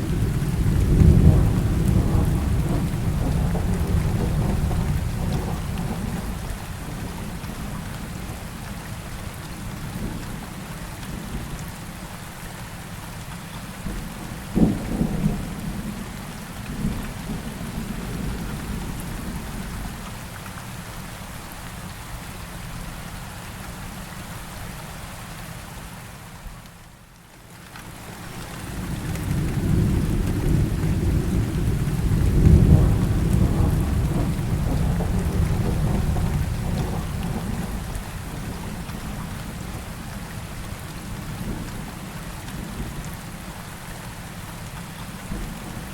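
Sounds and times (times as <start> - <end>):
rolling thunder: 0.0 - 7.7, 28.7 - 40.3
steady rain: 0.0 - 45.9
sharp thunderclap: 0.1 - 6.3, 28.8 - 38.7.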